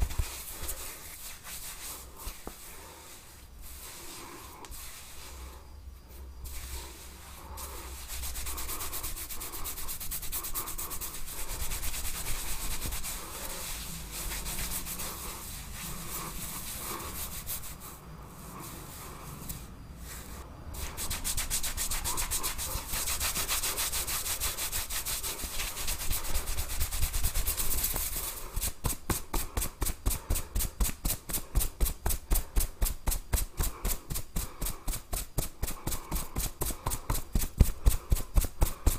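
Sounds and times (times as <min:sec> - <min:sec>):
hands scrubbing through hair: 0:00.0 - 0:05.6, 0:06.4 - 0:38.9.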